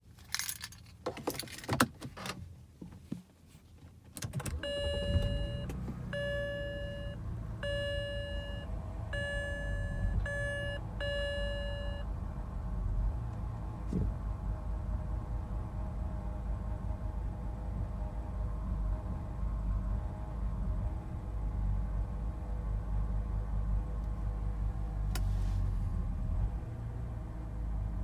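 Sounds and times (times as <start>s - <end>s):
in-car warning chime: 4.5s - 12.1s.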